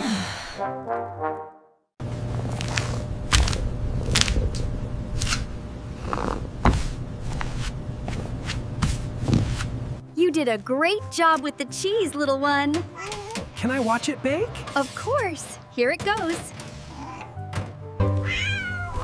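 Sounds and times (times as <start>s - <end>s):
steady low hum: 2.0s - 10.0s.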